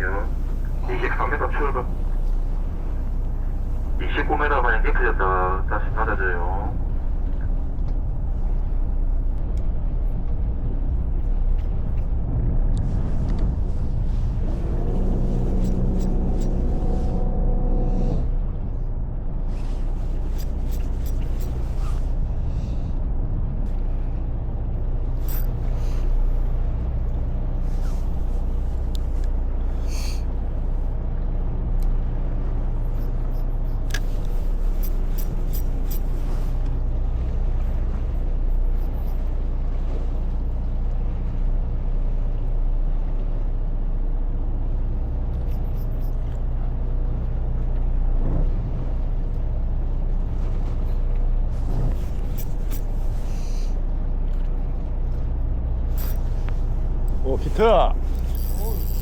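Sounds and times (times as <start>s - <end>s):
boat engine humming: 0.0s - 59.0s.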